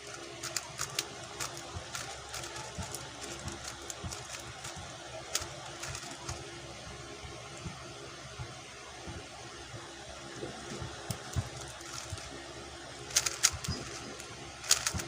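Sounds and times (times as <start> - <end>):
puzzle cube clicking: 0.2 - 6.4, 11.1 - 12.3, 13.1 - 15.0.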